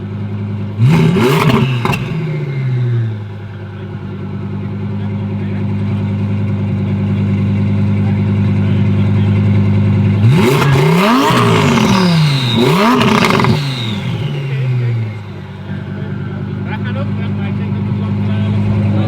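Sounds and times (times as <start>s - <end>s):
car engine revving: 0.0s - 19.0s
car accelerating through gear changes: 0.8s - 3.6s, 10.1s - 16.7s.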